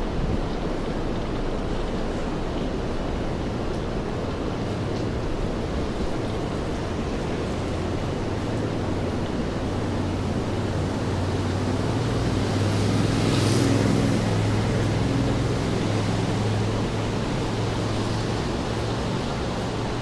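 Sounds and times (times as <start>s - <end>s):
rain: 0.0s - 20.0s
vehicle engine hum: 0.0s - 20.0s
tyres hissing on wet pavement: 0.6s - 20.0s.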